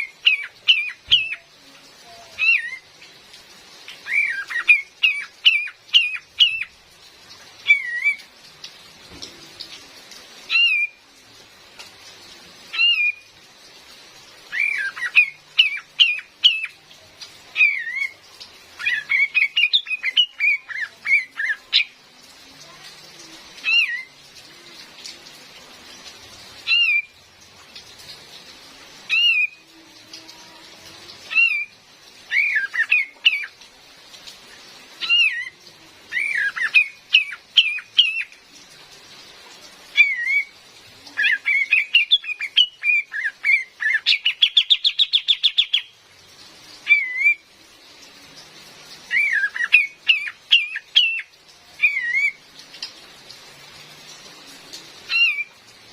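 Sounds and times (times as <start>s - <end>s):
bird chirping calls: 0.0s - 1.5s, 41.1s - 46.0s, 49.1s - 52.4s
rain hissing: 0.0s - 55.9s.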